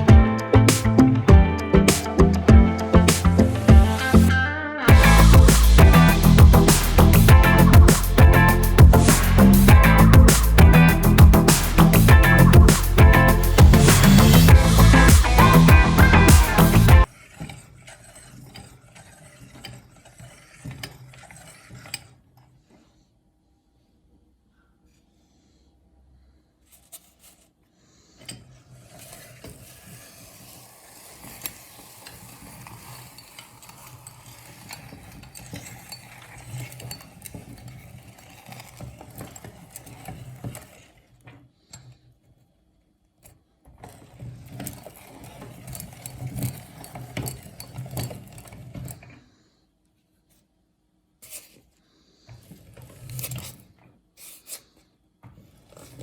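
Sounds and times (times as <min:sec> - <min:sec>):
meat grinder humming: 0:04.9 - 0:17.0
hard candy crushing crackle: 0:28.9 - 0:41.2.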